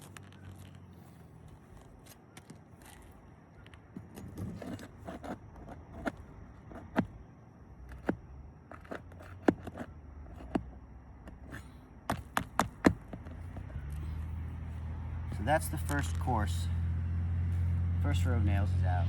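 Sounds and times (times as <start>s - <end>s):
metal tool scraping shingles: 4.0s - 7.1s.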